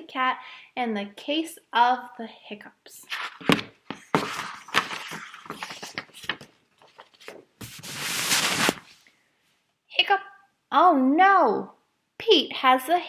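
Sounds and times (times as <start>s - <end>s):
book page turning: 3.1s - 9.1s
paper rustling: 3.1s - 9.1s.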